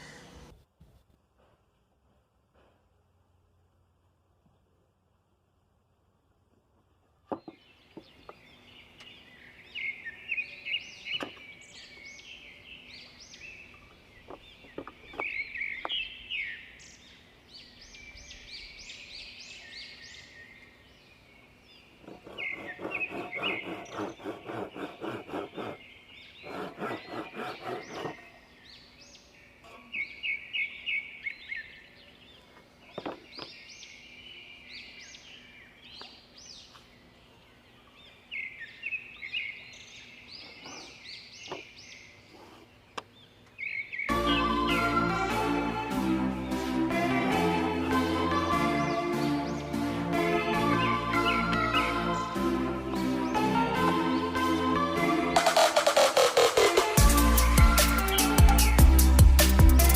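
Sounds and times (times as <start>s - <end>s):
small birds chirping: 6.8s - 45.4s, 48.6s - 54.3s
rapid rasping strokes: 22.0s - 25.8s, 26.4s - 28.2s.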